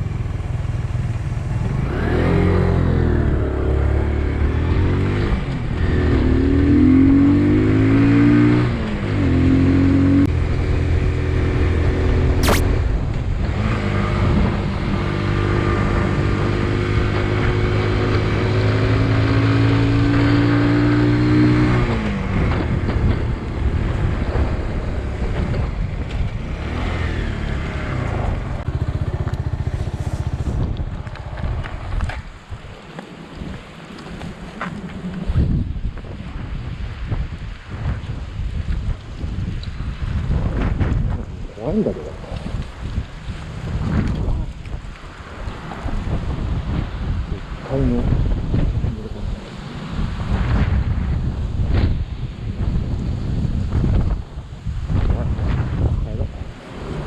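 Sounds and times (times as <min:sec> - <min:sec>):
motorcycle engine revving: 0:00.0 - 0:32.0
sharp click: 0:12.4 - 0:12.7.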